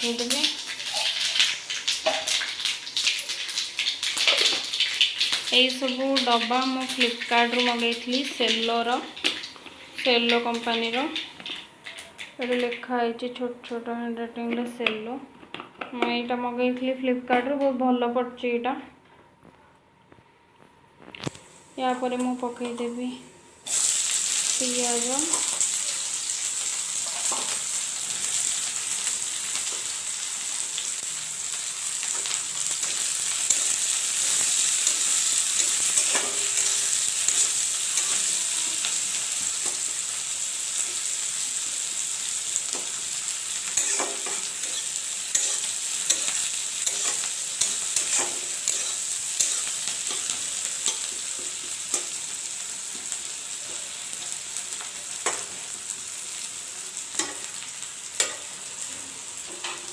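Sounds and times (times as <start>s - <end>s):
onions sizzling in hot oil: 0.0s - 12.3s, 21.3s - 59.9s.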